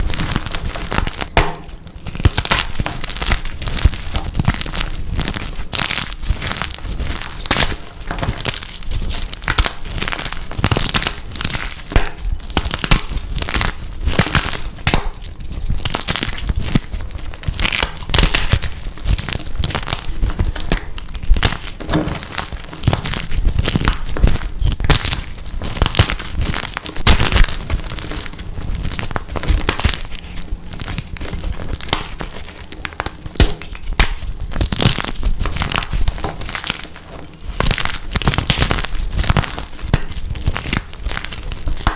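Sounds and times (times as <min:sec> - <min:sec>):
chalk being crushed and crunching: 0:00.0 - 0:41.9.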